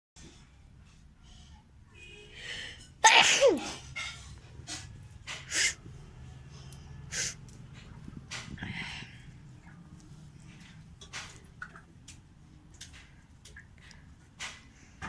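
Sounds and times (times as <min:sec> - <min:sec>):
person sneezing loudly: 0:03.0 - 0:03.8, 0:05.5 - 0:05.8
short breathy bursts: 0:05.5 - 0:05.8, 0:07.1 - 0:07.4.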